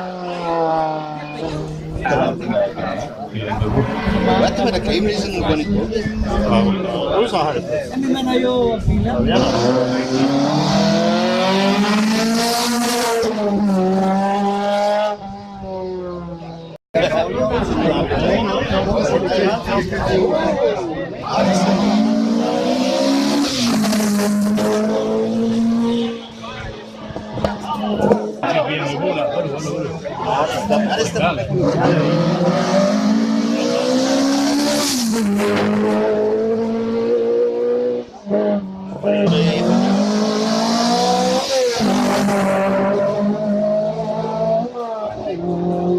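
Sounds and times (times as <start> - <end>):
race car engine revving high: 3.4 - 6.9, 9.2 - 16.5, 21.2 - 28.4, 30.6 - 45.9.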